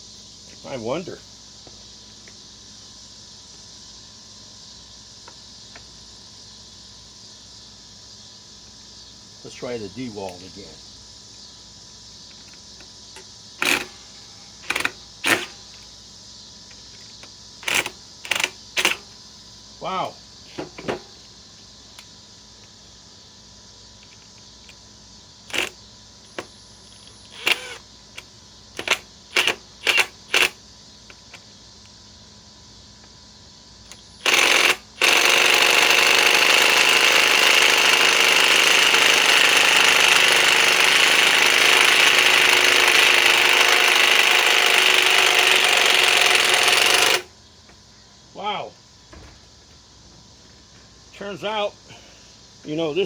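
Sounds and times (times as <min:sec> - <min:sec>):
impact driver hammering: 0:34.2 - 0:47.3.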